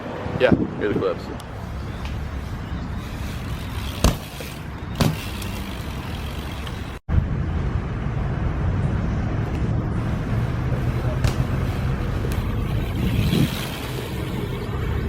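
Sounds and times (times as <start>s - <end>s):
bike tyres rolling on pavement: 1.4s - 7.0s, 9.4s - 15.0s.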